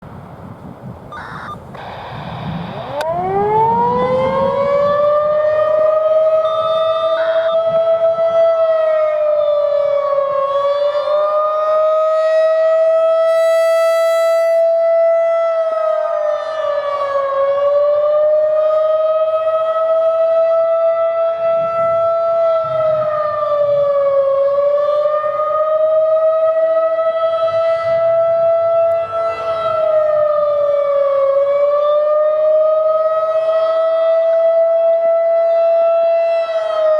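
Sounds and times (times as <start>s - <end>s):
rotating warning siren: 0.1s - 36.9s.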